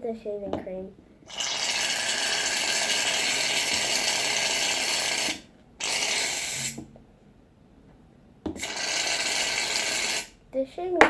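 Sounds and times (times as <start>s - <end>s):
aerosol can spraying foam: 1.3s - 6.8s, 8.6s - 10.3s.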